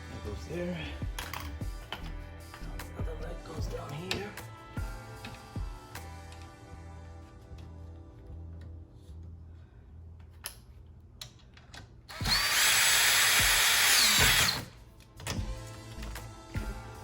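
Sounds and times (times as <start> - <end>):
power drill driving screw: 12.1 - 14.8.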